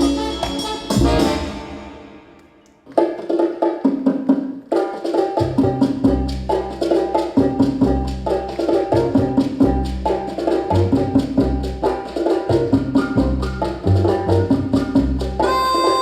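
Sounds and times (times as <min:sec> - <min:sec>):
dance music percussive beat: 0:00.0 - 0:16.0
deep bass line: 0:05.6 - 0:15.5.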